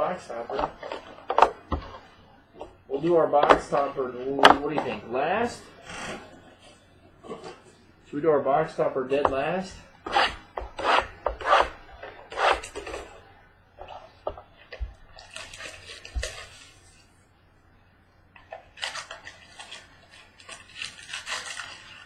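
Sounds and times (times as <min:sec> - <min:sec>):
card packs rustling and crinkling: 0:13.8 - 0:17.1, 0:18.4 - 0:22.0.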